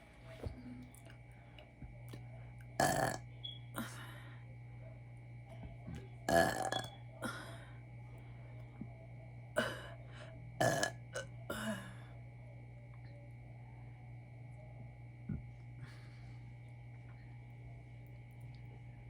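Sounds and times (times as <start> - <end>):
woman burping: 2.8 - 3.2, 6.3 - 7.5, 9.6 - 10.0, 10.6 - 12.0.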